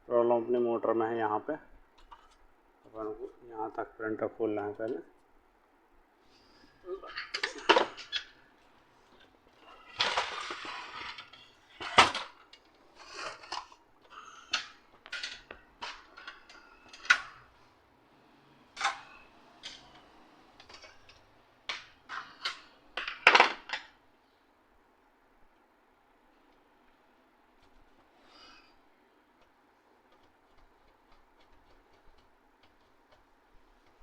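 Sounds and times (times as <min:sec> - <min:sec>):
plastic parts clicking and knocking: 0:07.2 - 0:08.3, 0:10.0 - 0:13.8, 0:20.6 - 0:24.0.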